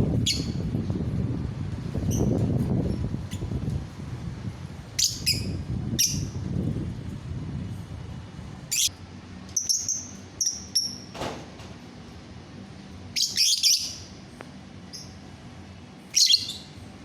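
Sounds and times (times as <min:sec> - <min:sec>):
lovebird chirping: 0:08.7 - 0:08.9, 0:09.6 - 0:11.1, 0:13.1 - 0:14.1, 0:16.1 - 0:16.8.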